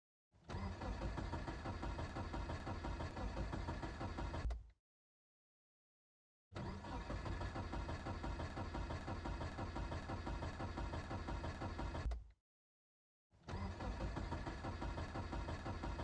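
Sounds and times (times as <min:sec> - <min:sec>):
car starter cranking engine: 0:00.4 - 0:04.6, 0:06.6 - 0:12.2, 0:13.4 - 0:16.0.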